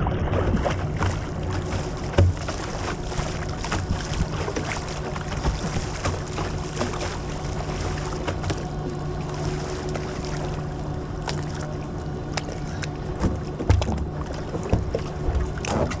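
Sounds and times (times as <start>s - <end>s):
knocks and bumps: 13.2s - 15.0s.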